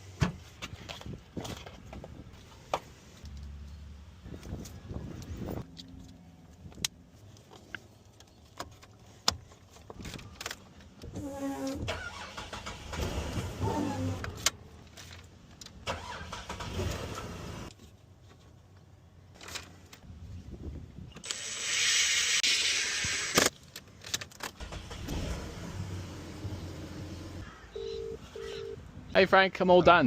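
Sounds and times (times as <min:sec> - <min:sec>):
car engine cranking on starter: 0:11.8 - 0:14.5, 0:15.8 - 0:17.7, 0:24.6 - 0:27.4.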